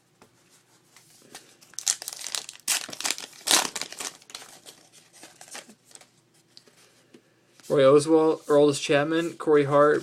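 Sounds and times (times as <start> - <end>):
wrapper tearing and crinkling: 1.7 - 6.1.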